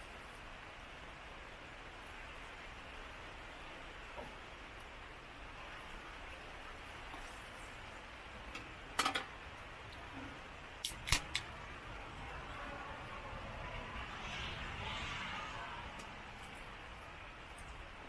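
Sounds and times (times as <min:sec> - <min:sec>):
heavy rain hissing: 0:09.7 - 0:18.0.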